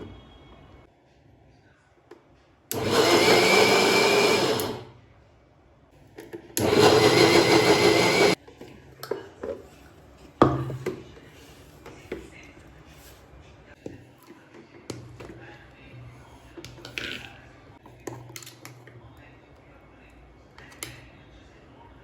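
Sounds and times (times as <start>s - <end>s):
mixer grinder motor running: 2.7s - 4.9s, 6.6s - 8.4s.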